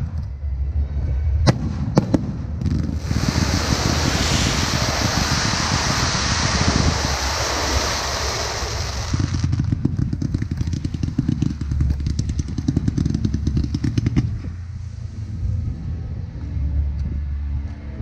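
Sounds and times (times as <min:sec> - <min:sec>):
low rumble: 0:00.0 - 0:18.0
fireworks crackling: 0:02.7 - 0:14.4
loud hiss: 0:02.9 - 0:09.7.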